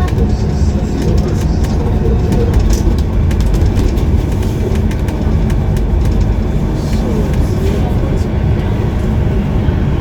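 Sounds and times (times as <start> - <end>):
light clicks and rattles: 0.0 - 7.8
bus engine and road rumble: 0.0 - 10.0.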